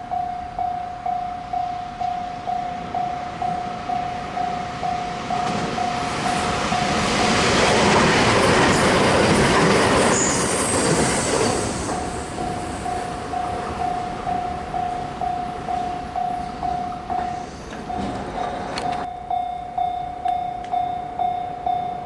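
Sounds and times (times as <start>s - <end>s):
level crossing alarm dinging: 0.0s - 7.5s, 12.4s - 22.0s
train rumbling over tracks: 0.0s - 22.0s
high wheel squeal: 10.1s - 13.0s.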